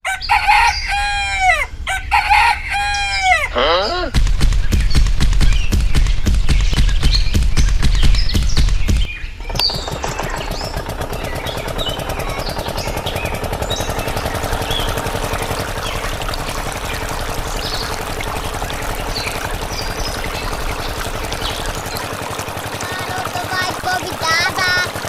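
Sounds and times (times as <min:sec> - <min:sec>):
small engine chugging: 0:09.0 - 0:25.0.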